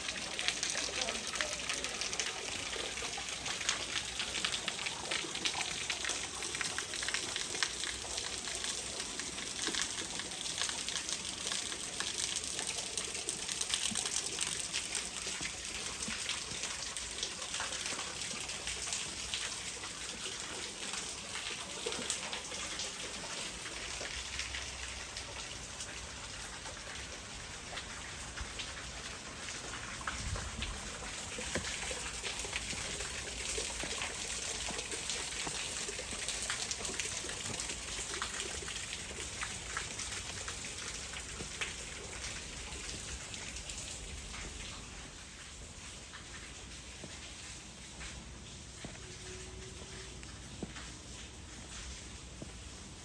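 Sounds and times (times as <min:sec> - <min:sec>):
stream water splashing: 0:27.2 - 0:49.6.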